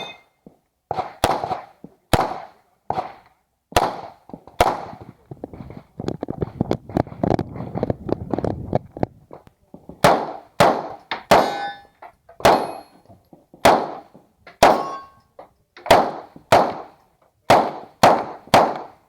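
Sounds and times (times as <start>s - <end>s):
steel plates clanging: 0.0s - 0.3s, 11.4s - 12.0s
pistol shots: 0.9s - 3.2s, 3.8s - 5.0s, 10.0s - 13.0s, 13.6s - 15.2s, 15.8s - 19.0s.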